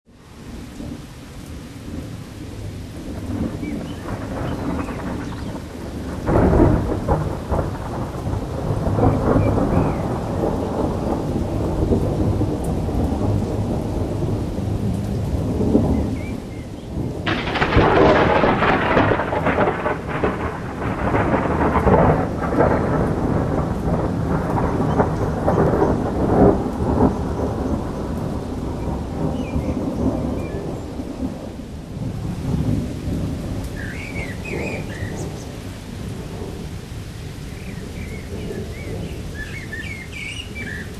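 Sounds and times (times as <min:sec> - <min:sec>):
steady rain: 0:00.0 - 0:40.9
thunder rumbling: 0:01.9 - 0:40.9
sharp thunder crack: 0:03.2 - 0:14.8, 0:16.9 - 0:31.4.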